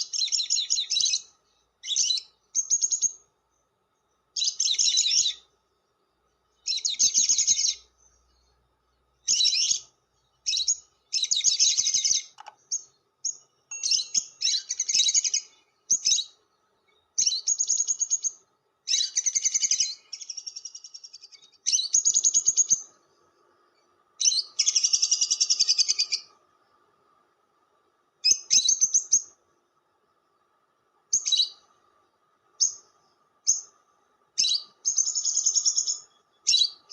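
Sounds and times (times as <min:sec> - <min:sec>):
lovebird chattering calls: 0:04.4 - 0:05.4, 0:06.6 - 0:07.8, 0:09.2 - 0:16.4, 0:24.2 - 0:26.3, 0:34.4 - 0:36.9.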